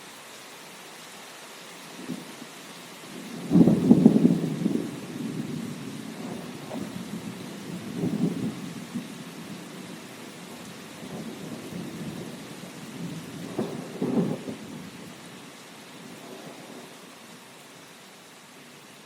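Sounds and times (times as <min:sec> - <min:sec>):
steady rain falling: 0:00.0 - 0:19.0
rolling thunder: 0:03.2 - 0:15.0.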